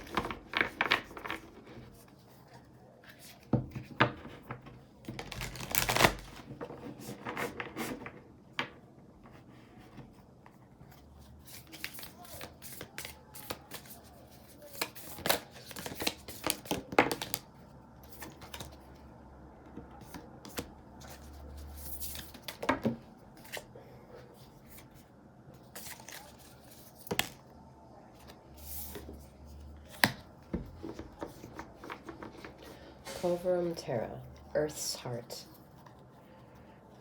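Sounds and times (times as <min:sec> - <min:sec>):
cards being shuffled: 0:05.0 - 0:08.0, 0:11.4 - 0:18.9, 0:25.6 - 0:27.4.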